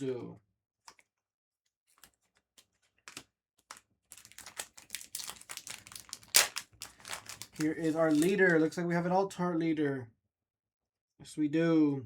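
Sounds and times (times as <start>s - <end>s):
foil wrapper crinkling and tearing: 1.9s - 9.0s
cards clicking: 3.1s - 9.0s.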